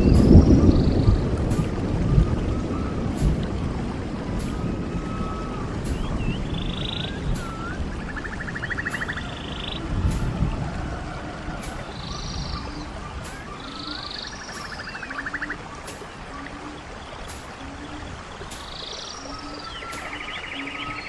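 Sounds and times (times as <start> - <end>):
bird chirps: 0.0 - 3.6, 4.3 - 21.0
low thuds: 0.0 - 20.6
steady rain: 0.0 - 21.0
buzzing animal calls: 11.5 - 21.0.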